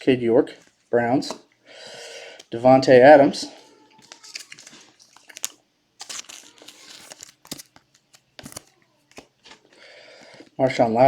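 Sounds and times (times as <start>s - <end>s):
card packs crinkling: 3.9s - 9.6s.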